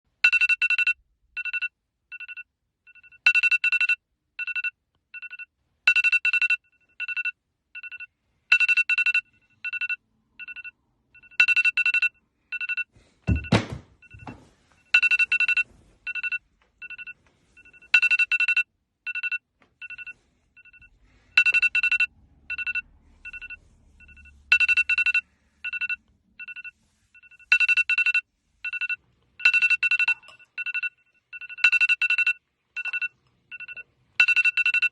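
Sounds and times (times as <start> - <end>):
smartphone alarm beeps: 0.2 - 34.9
thump: 13.3 - 14.4.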